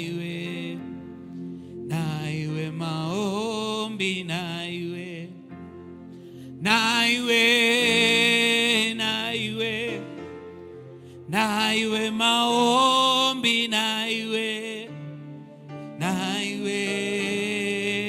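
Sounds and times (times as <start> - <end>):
sustained accompaniment chords: 0.0 - 18.0
person singing with vibrato: 6.6 - 10.4, 11.2 - 15.1, 15.8 - 18.0.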